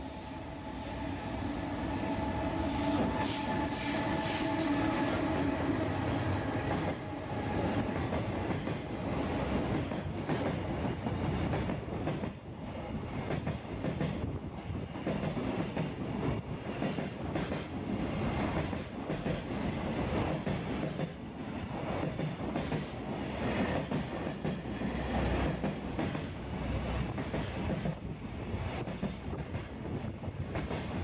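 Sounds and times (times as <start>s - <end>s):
freight train wheels clacking: 6.6s - 8.9s, 9.6s - 12.4s, 13.2s - 17.7s, 18.4s - 21.2s, 21.8s - 26.4s, 27.0s - 28.1s, 28.8s - 31.0s.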